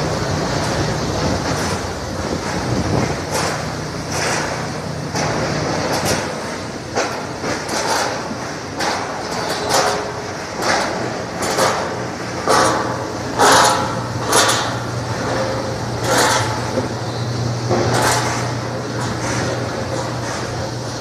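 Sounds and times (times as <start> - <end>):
washing machine motor hum: 0.0 - 21.0.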